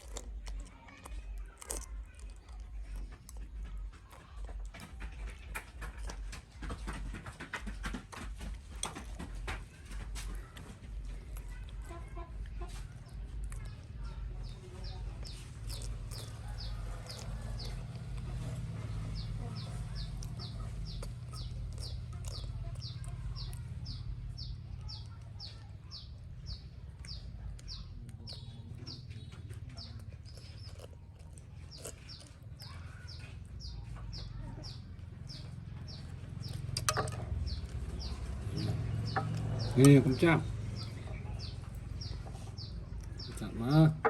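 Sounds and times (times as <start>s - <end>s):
bird chirping: 31.7s - 44.0s.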